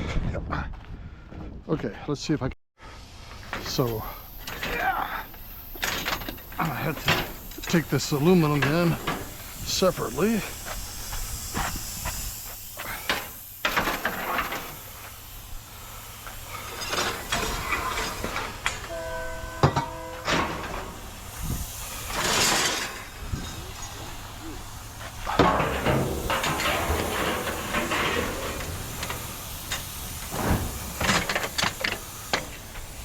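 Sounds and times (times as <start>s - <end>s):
steady hiss: 2.8s - 33.0s
scrap metal clanking: 16.4s - 24.3s, 25.0s - 33.0s
short horn-like tone: 18.8s - 21.0s.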